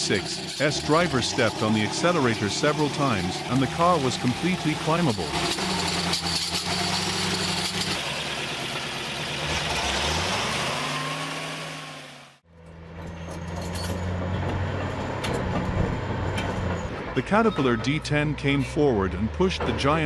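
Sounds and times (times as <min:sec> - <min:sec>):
heavy engine running steadily: 0:00.0 - 0:09.6
truck engine revving under load: 0:00.0 - 0:20.0.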